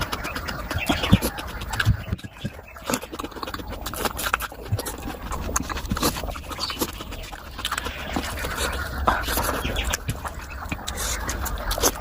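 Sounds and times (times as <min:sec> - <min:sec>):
chewing and wet lip-smacking: 0:00.0 - 0:12.0.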